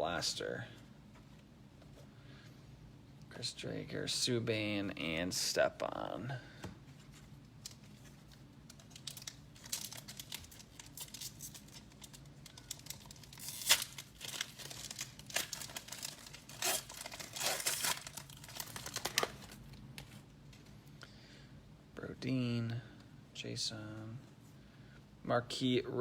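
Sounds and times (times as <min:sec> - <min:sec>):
card pack wrapper crinkling: 0:07.6 - 0:20.2
wrapper tearing: 0:08.7 - 0:19.8.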